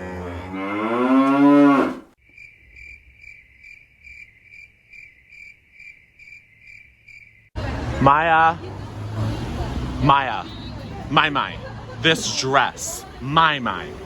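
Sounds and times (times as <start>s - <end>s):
cow mooing: 0.0s - 2.1s
crickets chirping: 2.2s - 7.6s.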